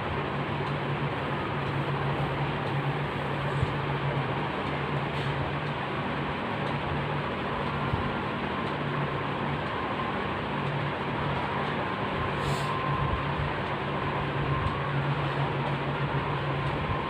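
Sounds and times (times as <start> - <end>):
low even hum: 0.0 - 17.0.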